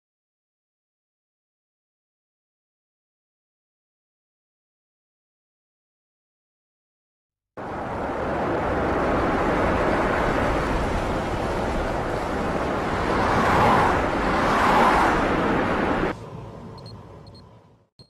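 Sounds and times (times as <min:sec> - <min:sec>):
cars driving by: 0:07.6 - 0:17.9.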